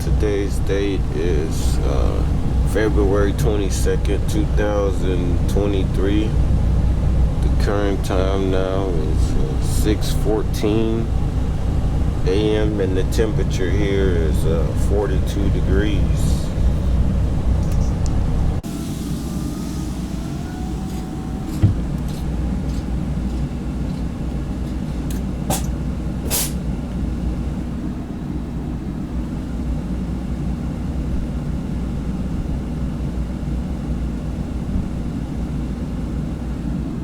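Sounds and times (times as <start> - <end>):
truck engine idling: 0.0 - 37.0
brief hiss: 26.3 - 26.6.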